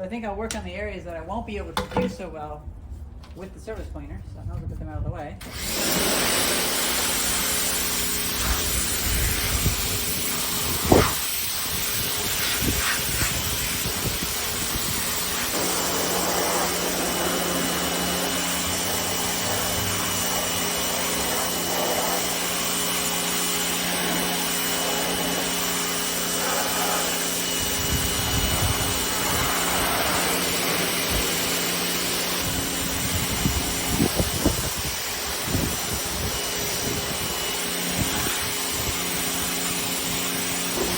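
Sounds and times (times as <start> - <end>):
pressure washer running: 5.4 - 40.9
water jet hissing: 5.4 - 40.9.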